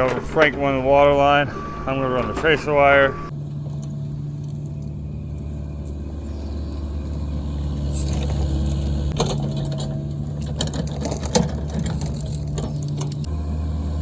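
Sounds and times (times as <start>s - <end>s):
excavator diesel engine running: 0.0s - 14.0s
metal knocks and clatter: 9.2s - 13.2s.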